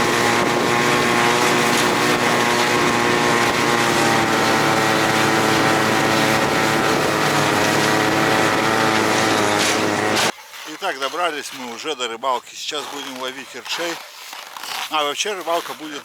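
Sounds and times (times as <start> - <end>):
snowmobile engine running: 0.0 - 10.3.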